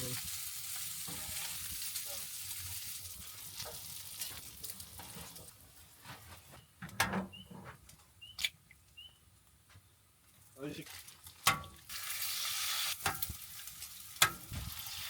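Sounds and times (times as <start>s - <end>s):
food sizzling in a frying pan: 0.0s - 5.1s, 11.9s - 15.0s.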